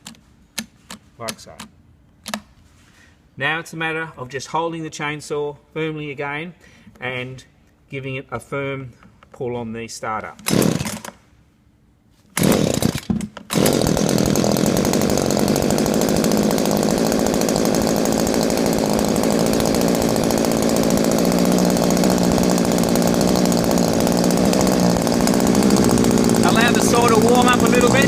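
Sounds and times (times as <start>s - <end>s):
chainsaw engine starting and idling: 10.4s - 11.3s, 12.4s - 28.0s.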